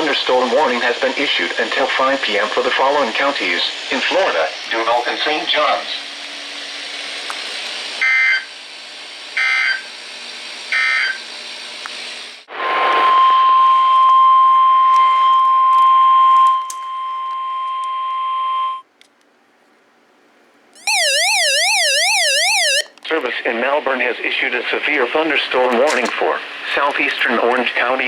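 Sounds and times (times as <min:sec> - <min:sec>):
steady single-pitch alert tone: 0:20.8 - 0:22.9
two-pitch digital data bursts: 0:20.8 - 0:22.9
warbling siren-like alert tone: 0:20.8 - 0:22.9.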